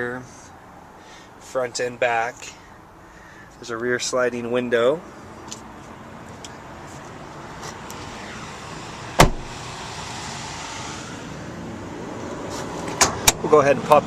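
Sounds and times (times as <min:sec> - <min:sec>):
sharp thump: 0:09.2 - 0:09.6.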